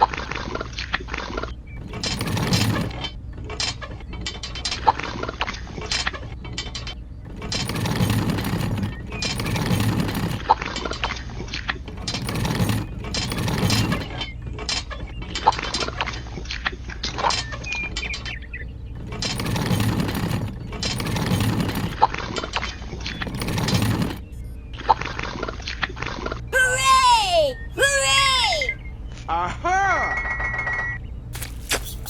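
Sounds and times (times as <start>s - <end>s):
gear clatter: 1.8s - 14.9s, 19.0s - 24.3s, 31.4s - 32.0s
small electric gear motors: 1.9s - 3.0s, 7.3s - 10.5s, 12.0s - 14.2s, 19.0s - 22.0s, 31.4s - 32.0s.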